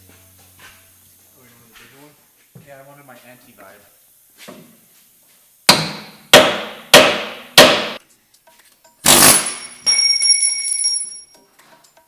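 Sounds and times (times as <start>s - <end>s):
hammer striking steel: 5.7s - 8.0s, 9.0s - 10.4s
ringing metallic rattle: 9.1s - 11.4s.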